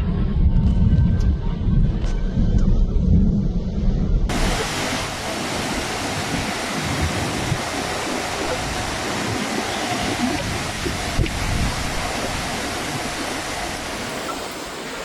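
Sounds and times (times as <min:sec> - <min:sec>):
low rumble: 0:00.0 - 0:07.7
wind: 0:00.0 - 0:15.0
heavy rain: 0:04.3 - 0:15.0.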